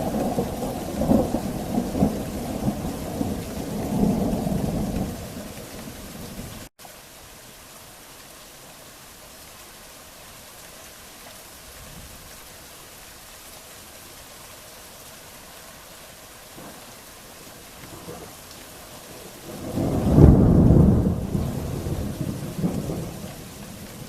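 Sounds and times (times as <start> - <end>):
distant thunder: 0.0 - 6.6, 19.1 - 24.0
steady rain falling: 0.0 - 24.0.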